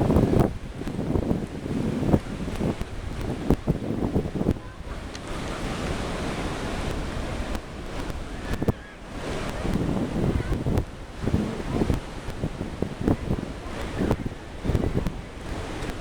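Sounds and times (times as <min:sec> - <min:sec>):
wind buffeting microphone: 0:00.0 - 0:16.0
steady rushing hiss: 0:02.1 - 0:16.0.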